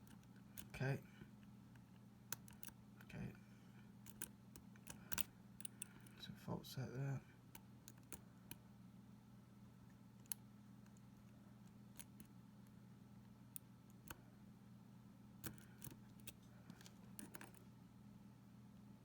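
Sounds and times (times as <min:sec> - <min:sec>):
lock pick clicking in a lock: 0:02.3 - 0:02.8, 0:04.0 - 0:06.1, 0:07.5 - 0:08.6, 0:15.4 - 0:16.4.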